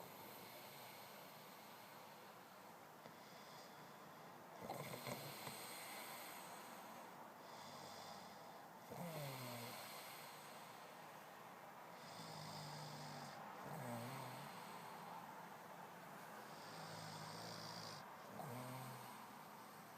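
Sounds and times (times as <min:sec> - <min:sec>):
breathy hiss: 0:00.0 - 0:19.9
man snoring: 0:04.6 - 0:06.8, 0:07.4 - 0:10.8, 0:11.9 - 0:14.9, 0:16.4 - 0:19.3.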